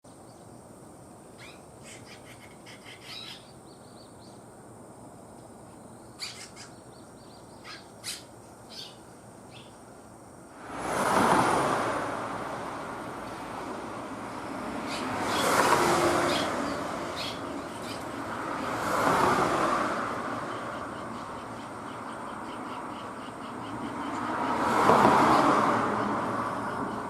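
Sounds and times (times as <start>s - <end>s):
swallows chirping: 1.4s - 4.4s, 5.9s - 9.8s, 14.8s - 18.4s
vehicle passing: 10.5s - 27.0s.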